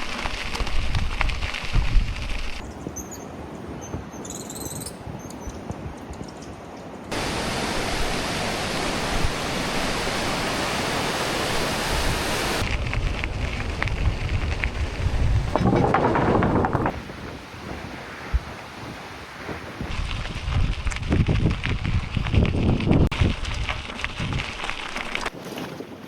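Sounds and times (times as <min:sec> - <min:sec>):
rushing river water: 0:07.1 - 0:12.7.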